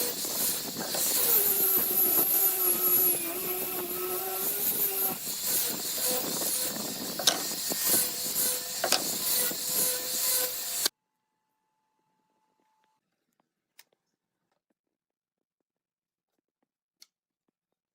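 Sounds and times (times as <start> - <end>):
power tool hissing: 0.0 - 10.9.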